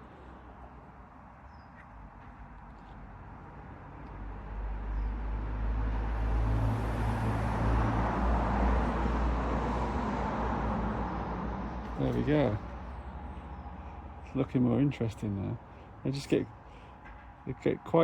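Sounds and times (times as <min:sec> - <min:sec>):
road noise: 0:00.0 - 0:18.0
vehicle engine rumble: 0:04.4 - 0:17.9.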